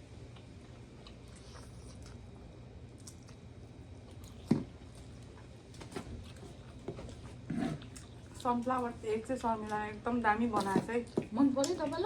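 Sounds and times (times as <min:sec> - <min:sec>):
wet chewing and mouth sounds: 0:00.3 - 0:12.0.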